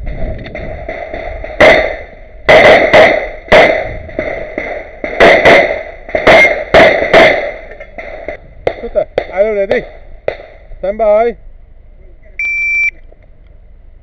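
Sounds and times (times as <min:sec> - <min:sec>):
pistol shots: 0:00.6 - 0:10.6.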